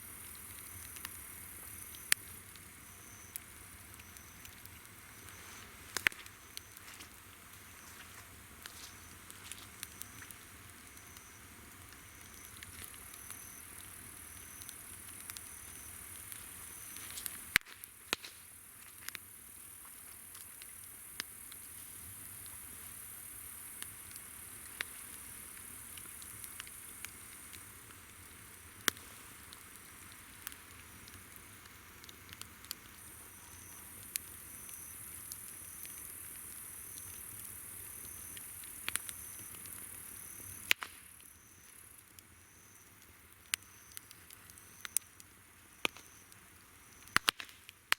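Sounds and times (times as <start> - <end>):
insect chirping: 0.0 - 4.5, 11.0 - 17.6, 33.0 - 47.2
insects trilling: 0.0 - 17.6, 32.9 - 47.2
campfire crackling: 0.0 - 47.9.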